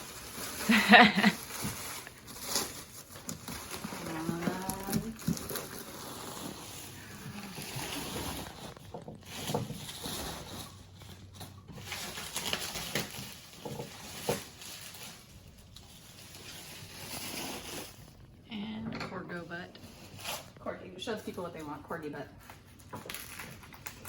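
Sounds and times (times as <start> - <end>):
plastic packaging crinkling: 0.0 - 18.4, 22.3 - 24.0.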